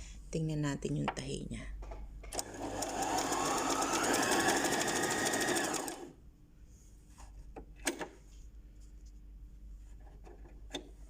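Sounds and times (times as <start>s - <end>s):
sewing machine stitching: 2.3s - 6.1s.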